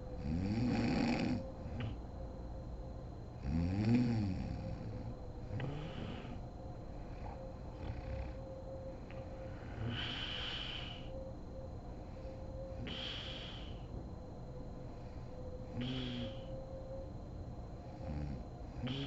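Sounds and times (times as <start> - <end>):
woman snoring: 0.2 - 2.0, 3.4 - 6.4, 7.2 - 8.4, 9.7 - 11.0, 15.7 - 16.5, 18.0 - 19.0
hissing breath: 5.5 - 8.4, 9.3 - 11.2, 12.2 - 13.9, 14.9 - 16.6.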